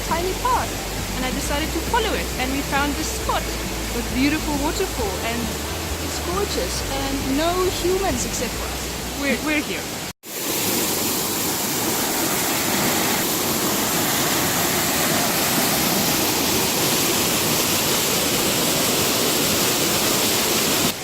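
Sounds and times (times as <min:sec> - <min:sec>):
small waterfall rushing: 0:00.0 - 0:21.0.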